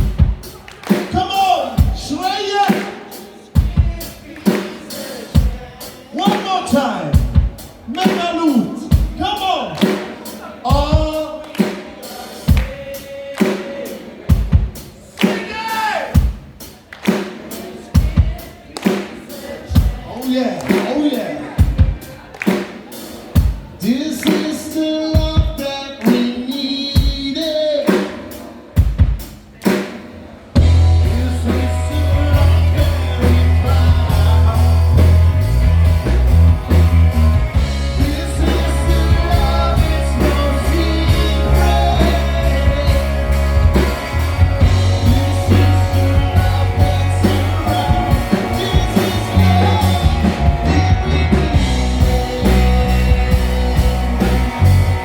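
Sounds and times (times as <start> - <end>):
rock band playing: 0.0 - 55.0
drum hits: 28.8 - 55.0
person singing: 30.6 - 55.0.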